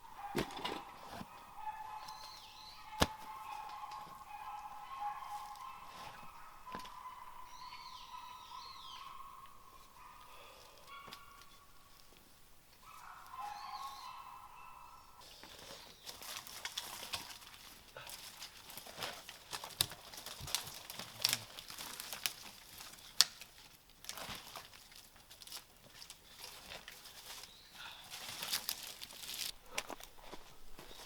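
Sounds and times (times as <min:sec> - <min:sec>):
dry leaves and twigs rustling: 0:02.0 - 0:08.0, 0:09.7 - 0:31.0
twigs snapping: 0:02.2 - 0:03.8, 0:15.4 - 0:30.1.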